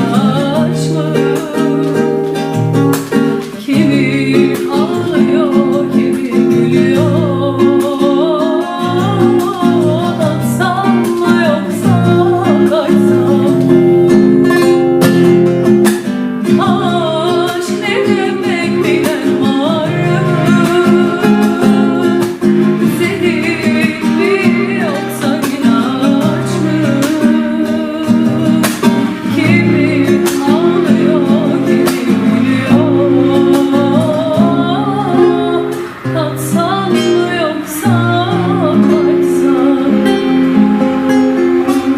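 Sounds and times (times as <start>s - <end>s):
acoustic guitar strumming: 0.0s - 41.9s
wavering melody line: 38.3s - 41.9s.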